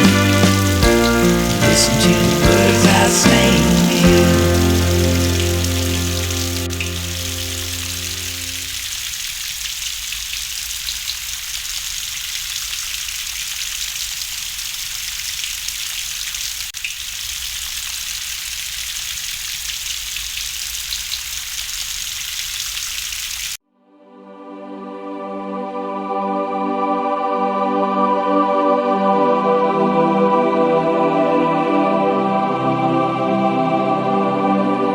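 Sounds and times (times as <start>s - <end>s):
soft organ-like chords: 0.0s - 8.7s
steady rain hiss: 0.0s - 23.6s.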